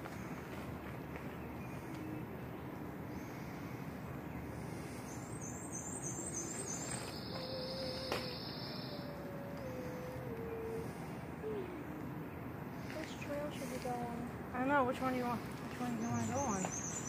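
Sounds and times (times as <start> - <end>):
low outdoor background noise: 0.0 - 17.0
insects trilling: 4.6 - 14.3.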